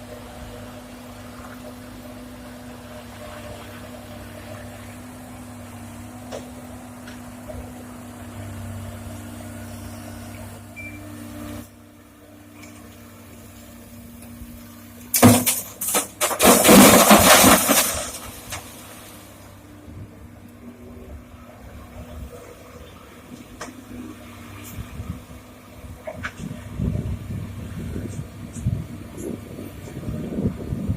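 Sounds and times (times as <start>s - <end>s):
diesel engine humming: 0.0s - 30.9s
stones crashing into steel truck bed: 15.1s - 19.3s.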